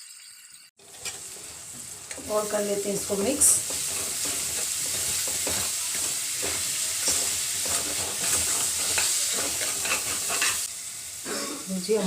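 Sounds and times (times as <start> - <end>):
food sizzling in a pan: 0.0 - 12.0
ladle scraping and tapping pan: 0.8 - 2.2, 3.6 - 10.7.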